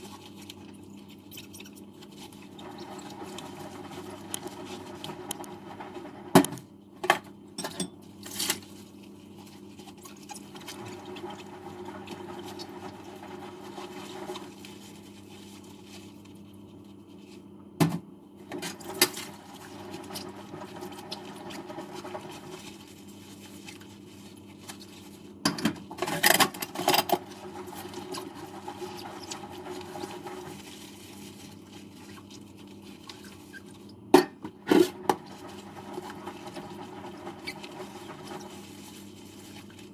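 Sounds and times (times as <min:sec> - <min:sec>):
running water in sink: 0:02.3 - 0:06.4, 0:09.4 - 0:16.1, 0:18.5 - 0:25.1, 0:26.0 - 0:33.9, 0:34.6 - 0:39.9
dishes clattering: 0:07.6 - 0:08.0.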